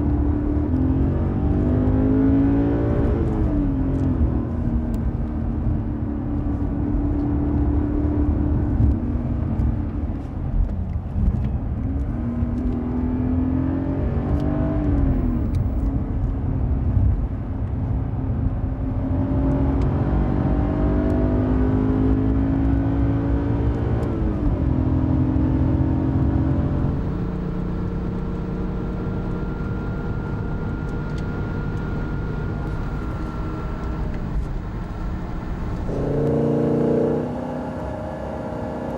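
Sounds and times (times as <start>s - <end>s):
car engine revving: 20.8s - 38.9s.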